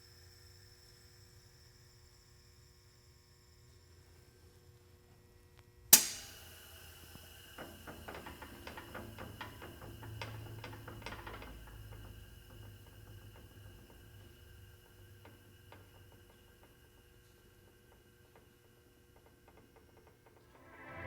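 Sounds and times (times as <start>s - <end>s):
low hum: 20.5s - 21.0s.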